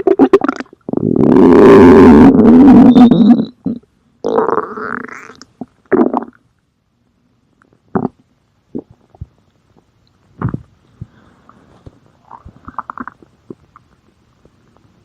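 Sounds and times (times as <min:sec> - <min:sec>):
stomach growling and gurgling: 0:12.2 - 0:14.0.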